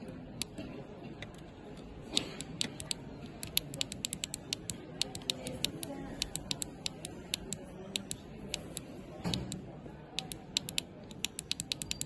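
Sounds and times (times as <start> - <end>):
sharp clicks: 2.1 - 9.6, 10.2 - 12.0.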